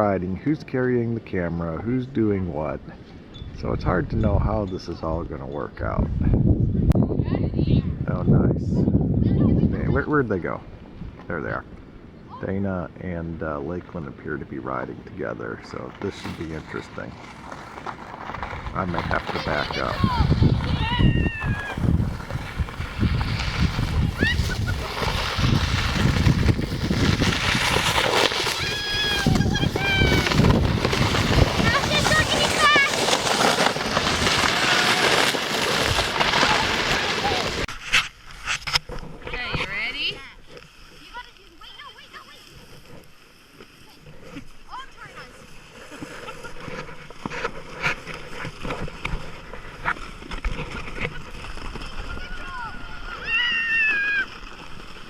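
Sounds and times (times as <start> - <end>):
wind buffeting microphone: 3.3 - 37.7
crunches and scrapes in snow: 13.1 - 55.0.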